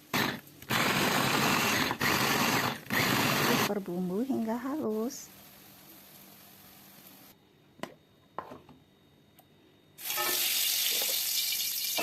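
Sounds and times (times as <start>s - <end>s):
spice paste sizzling in a pan: 4.8s - 7.3s, 10.0s - 12.0s.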